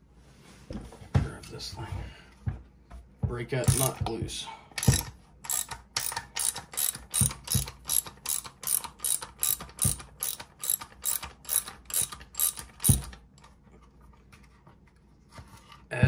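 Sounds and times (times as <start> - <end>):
hand ratchet clicking: 3.6 - 4.0, 4.8 - 13.2.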